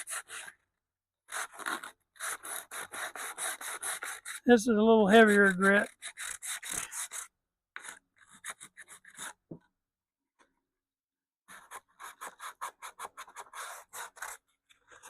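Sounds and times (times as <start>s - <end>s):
sandpaper rubbing on wood: 0.0s - 0.5s, 1.3s - 4.4s, 5.1s - 7.3s.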